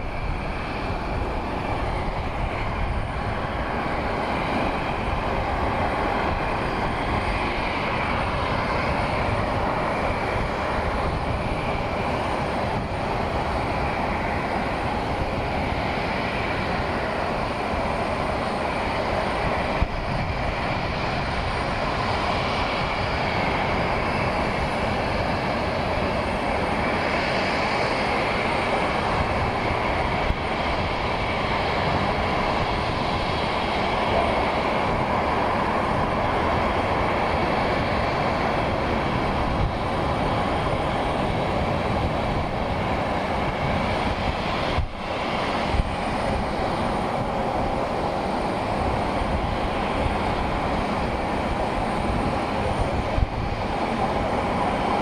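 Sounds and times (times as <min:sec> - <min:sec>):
jet engines running: 0:00.0 - 0:55.0.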